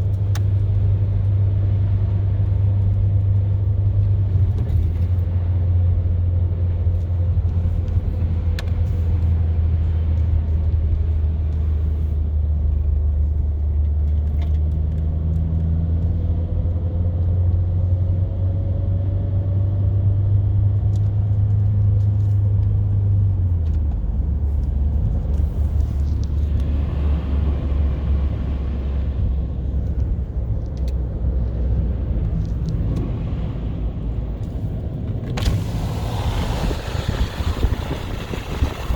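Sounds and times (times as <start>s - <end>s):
car engine and road drone: 0.0s - 38.9s
hissing tyre noise: 31.3s - 38.9s.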